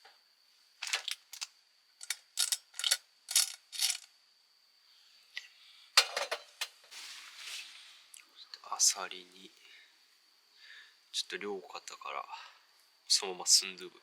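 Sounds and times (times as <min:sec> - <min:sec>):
clams and utensils clinking: 0:00.8 - 0:04.1.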